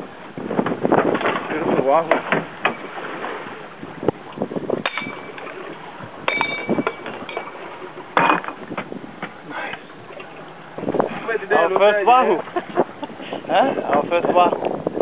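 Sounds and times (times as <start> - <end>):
fishing gear knocking and clinking: 4.8 - 5.5, 6.2 - 7.6.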